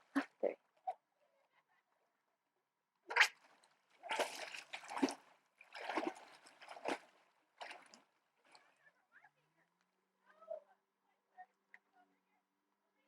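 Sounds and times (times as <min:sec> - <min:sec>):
water splashing: 0:04.0 - 0:08.0.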